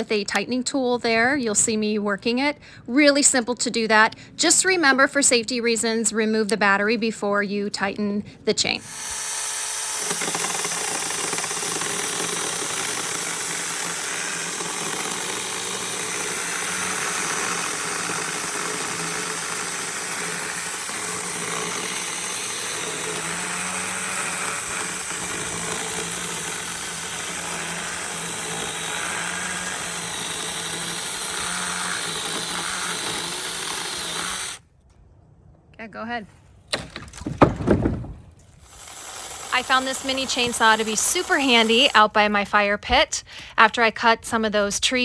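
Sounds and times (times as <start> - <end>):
electric chainsaw running: 8.8 - 34.6, 38.6 - 42.2.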